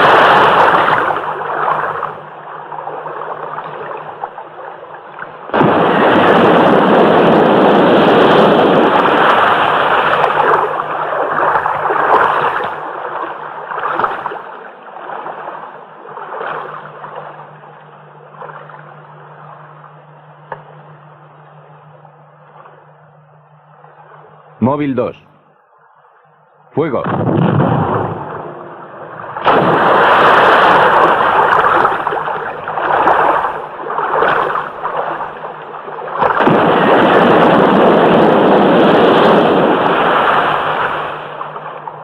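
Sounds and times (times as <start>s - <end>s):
heavy rushing water spray: 0.0s - 4.0s, 5.5s - 14.5s, 27.4s - 42.0s
explosion blast: 5.5s - 9.5s, 27.0s - 28.8s, 29.4s - 31.0s, 36.4s - 39.8s.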